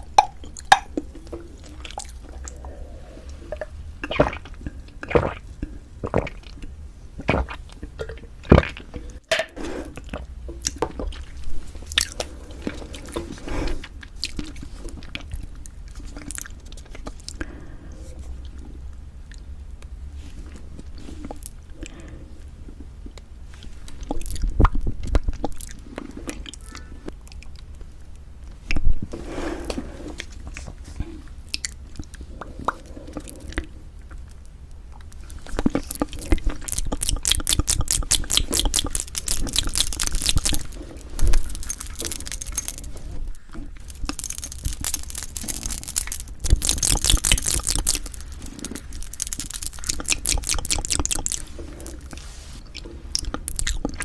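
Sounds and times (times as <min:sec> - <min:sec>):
person chewing food: 0:30.2 - 0:54.0
rapid fine crunching: 0:35.3 - 0:52.7.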